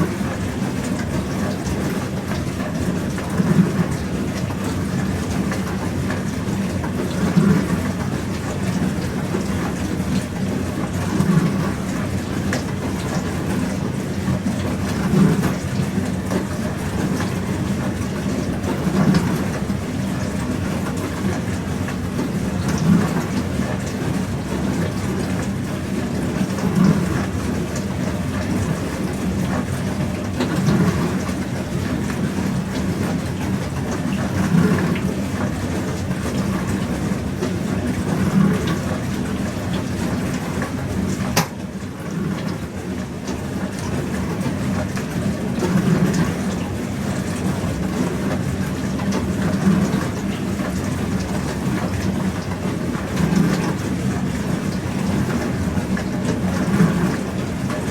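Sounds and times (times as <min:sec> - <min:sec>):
dishwasher spraying water: 0:51.8 - 0:57.9.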